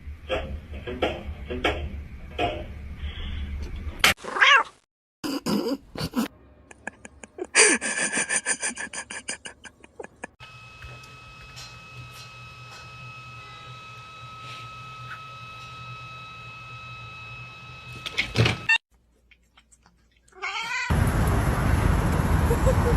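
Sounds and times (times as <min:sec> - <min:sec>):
cat meowing: 0:04.3 - 0:04.7, 0:20.4 - 0:20.9.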